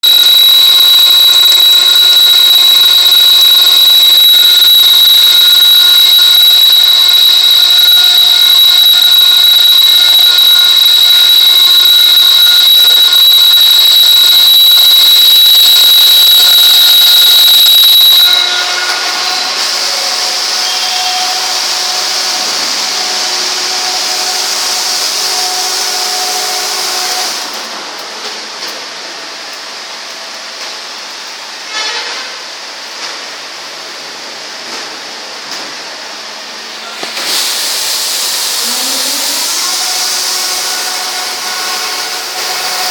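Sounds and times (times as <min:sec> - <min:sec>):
faint steady tones: 0:00.0 - 0:18.6
drilling machine high whine: 0:00.0 - 0:27.7, 0:37.0 - 0:42.9.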